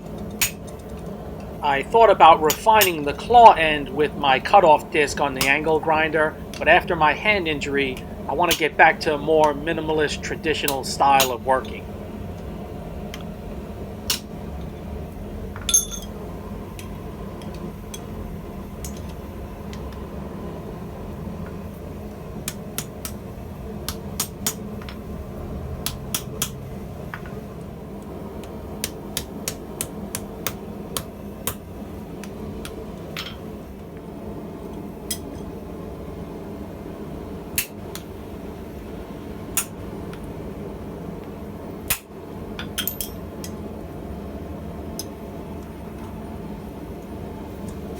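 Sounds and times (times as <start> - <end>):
hammer striking hot steel on anvil: 0.3 - 0.8, 2.4 - 3.3, 10.6 - 11.4, 15.6 - 16.2, 23.9 - 25.0, 25.8 - 26.6.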